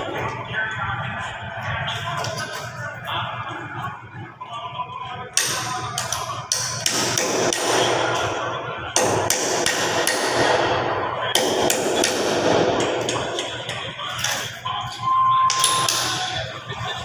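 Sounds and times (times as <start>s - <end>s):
hammer blows: 5.4s - 17.0s.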